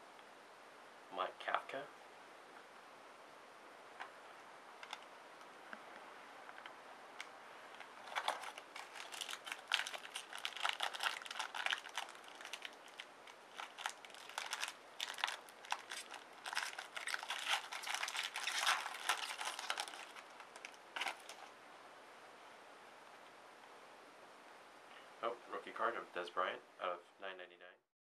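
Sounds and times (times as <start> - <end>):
wrapper crinkling: 7.7 - 21.6.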